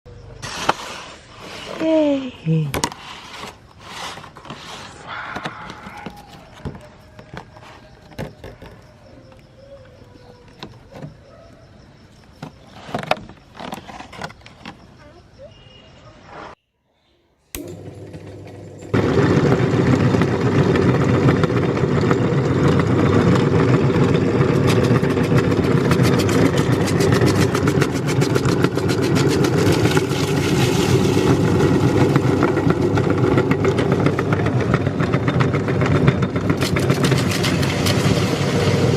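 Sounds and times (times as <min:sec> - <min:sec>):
meat grinder running: 0:17.6 - 0:38.9
hard candy crackling being ground: 0:17.7 - 0:34.9, 0:35.6 - 0:38.9.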